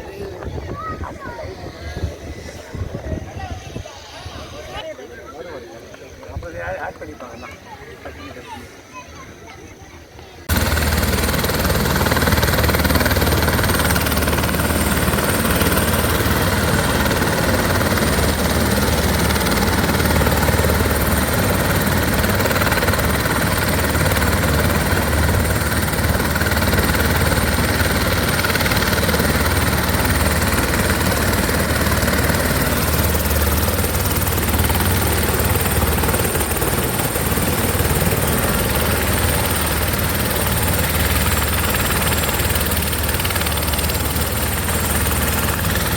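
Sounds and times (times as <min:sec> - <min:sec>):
helicopter rotor beat: 0:00.0 - 0:45.9
constant rushing noise: 0:10.4 - 0:45.9.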